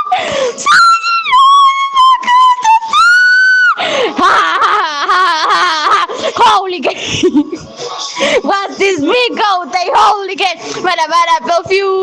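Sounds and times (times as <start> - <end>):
woman singing in strained voice: 0.0 - 6.9.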